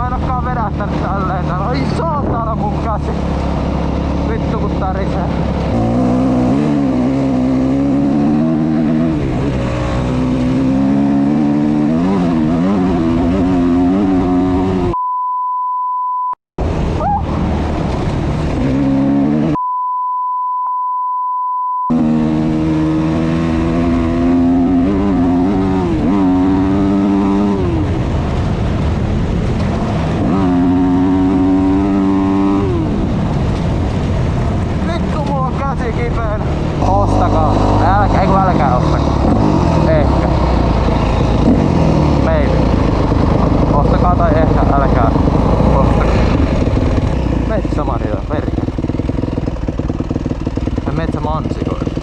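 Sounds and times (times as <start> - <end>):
motocross bike engine revving: 0.0 - 15.0, 18.3 - 19.6, 21.9 - 52.0
steady high beep: 14.9 - 16.4, 19.6 - 22.0.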